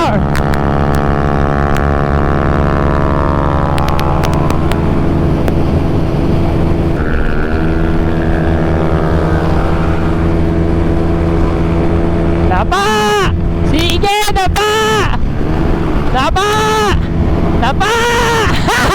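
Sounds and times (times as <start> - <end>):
scooter engine running hard: 0.0 - 18.9
wind rush: 0.0 - 18.9
sharp clicks: 3.7 - 5.6.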